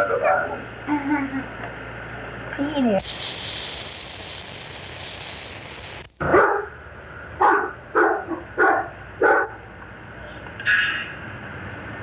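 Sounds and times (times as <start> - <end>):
dog barking: 0.0 - 0.6, 6.2 - 6.8, 7.4 - 9.6
steady hiss: 2.6 - 6.3.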